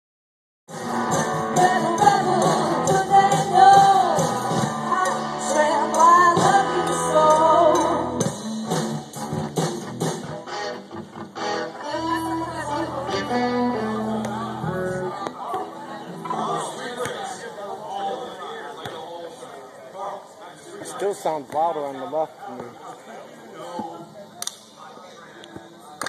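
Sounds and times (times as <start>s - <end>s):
rock band playing: 0.7s - 15.2s
person singing: 1.2s - 8.2s.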